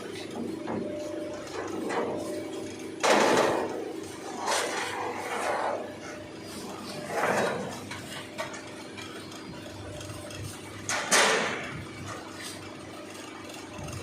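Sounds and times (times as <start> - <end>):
bending machine humming: 0.0 - 14.0.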